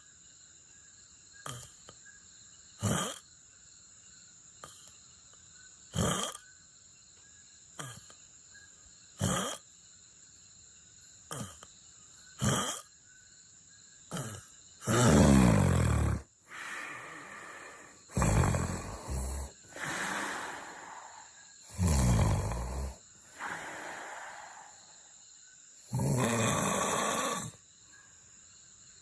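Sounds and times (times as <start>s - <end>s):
person snoring: 1.4s - 1.7s, 11.3s - 11.6s, 14.1s - 25.2s, 25.8s - 27.6s.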